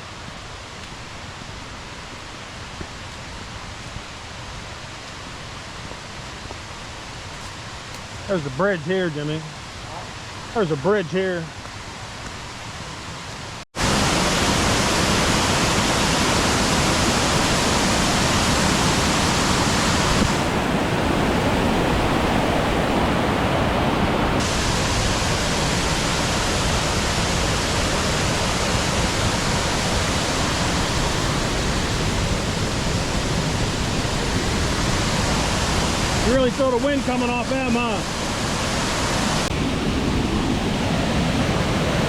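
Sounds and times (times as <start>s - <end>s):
waterfall rushing: 13.8s - 42.0s.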